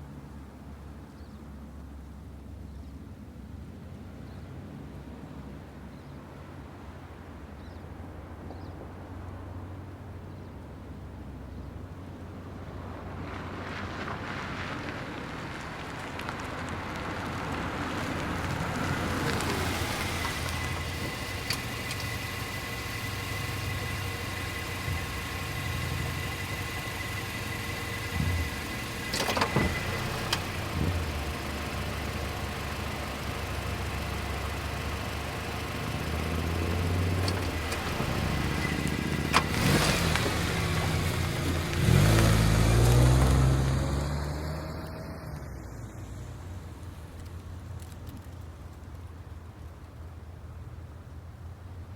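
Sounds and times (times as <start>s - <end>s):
vehicles driving by: 6.4s - 51.9s
sharp clicks: 19.2s - 31.9s.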